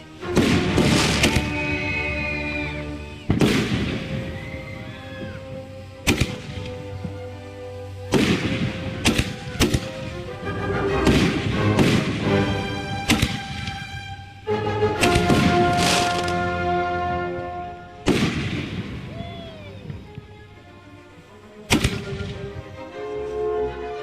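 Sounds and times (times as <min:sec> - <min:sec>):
background music: 0:00.0 - 0:24.0
firework bangs: 0:00.2 - 0:07.3, 0:08.0 - 0:10.3, 0:11.0 - 0:14.1, 0:15.0 - 0:16.7, 0:18.0 - 0:20.1, 0:21.7 - 0:22.6.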